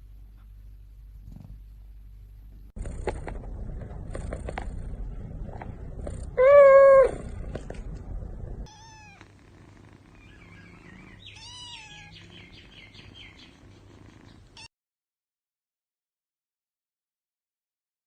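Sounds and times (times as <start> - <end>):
cats meowing: 6.2 - 7.5, 8.6 - 9.3, 10.2 - 12.7.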